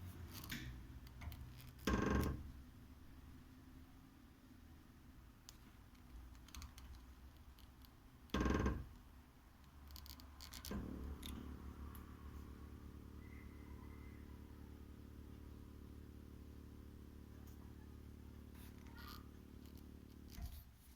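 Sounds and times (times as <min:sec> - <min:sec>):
radiator humming: 0:10.5 - 0:20.5.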